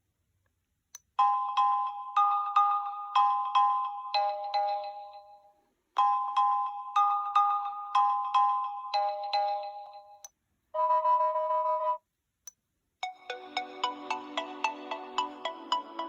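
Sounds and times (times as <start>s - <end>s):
ringtone melody: 1.2s - 10.2s, 13.0s - 16.0s.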